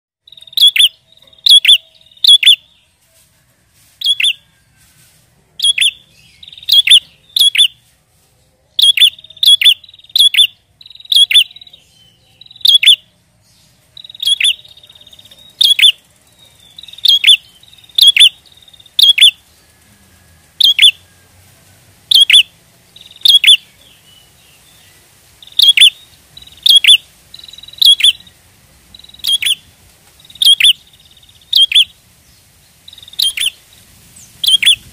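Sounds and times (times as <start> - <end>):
faint buzzy bird trill: 0.2 - 34.9
bird sharp clipped calls: 0.3 - 2.6, 5.6 - 7.8, 8.8 - 11.8, 12.5 - 13.0, 14.0 - 16.0, 16.6 - 19.4, 20.6 - 21.0, 22.1 - 24.0, 25.4 - 28.3, 29.0 - 31.9, 32.9 - 33.6, 34.2 - 34.9.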